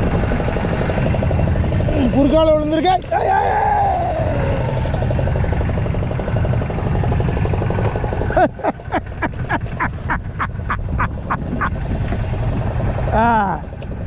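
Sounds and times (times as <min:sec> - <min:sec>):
boat engine running: 0:00.0 - 0:14.0.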